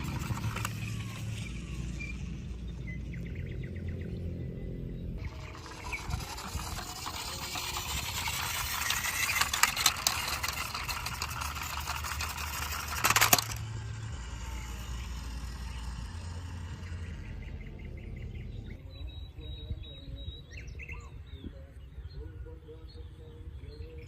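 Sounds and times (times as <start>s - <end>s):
rattling and scraping with clicks: 0.0s - 1.5s, 5.2s - 14.7s.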